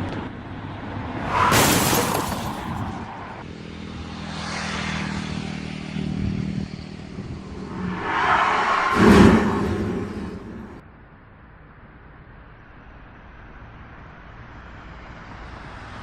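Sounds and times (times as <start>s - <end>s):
car crash: 1.2s - 3.0s.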